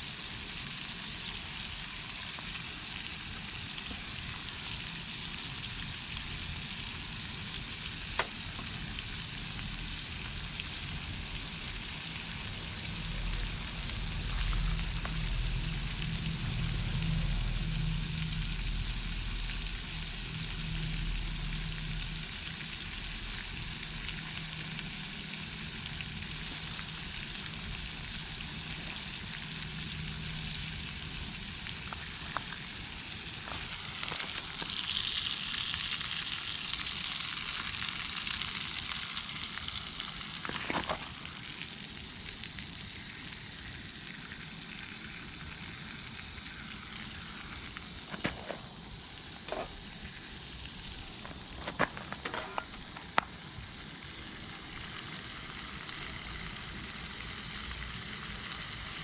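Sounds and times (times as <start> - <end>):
meat sizzling over campfire: 0.0 - 59.0
low hum: 12.3 - 22.6.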